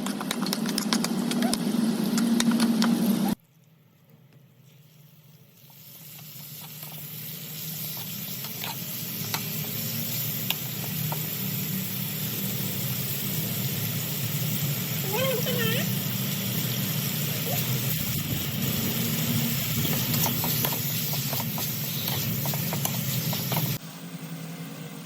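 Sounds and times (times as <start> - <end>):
food sizzling in hot oil: 4.7 - 23.8.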